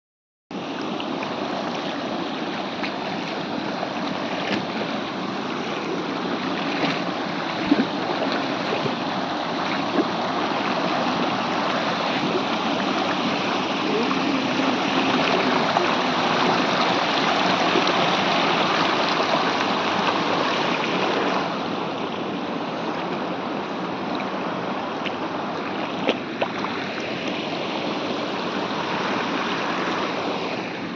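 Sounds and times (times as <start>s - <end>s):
waterfall rushing: 1.0s - 21.4s.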